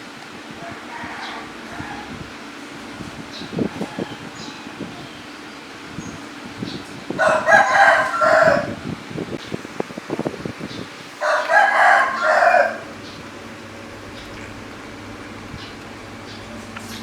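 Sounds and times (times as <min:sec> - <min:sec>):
rooster crowing: 0:00.6 - 0:05.6, 0:07.1 - 0:08.9, 0:11.2 - 0:17.0.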